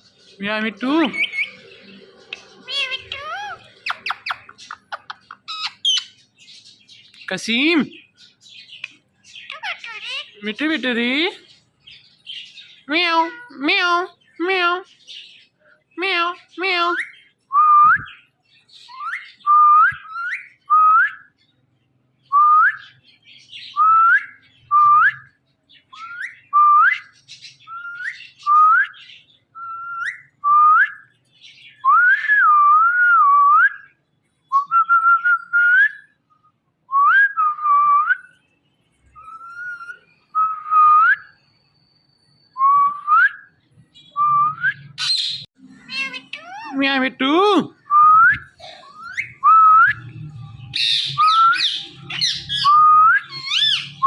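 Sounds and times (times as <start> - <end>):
parrot whistling: 44.2 - 46.9, 47.8 - 50.2, 50.8 - 54.0.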